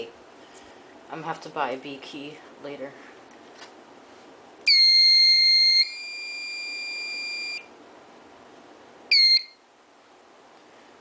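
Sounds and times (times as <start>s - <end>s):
fire alarm panel beeping: 4.6s - 7.7s, 9.1s - 9.6s.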